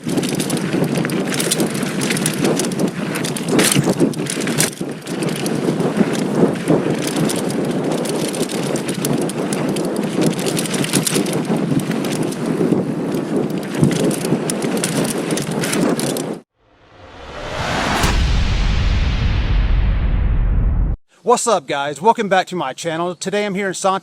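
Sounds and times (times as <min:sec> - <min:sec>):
bike clattering over bumps: 0:00.0 - 0:16.4
bike tyres on loose dirt: 0:00.0 - 0:16.4
wind on microphone: 0:00.0 - 0:21.0.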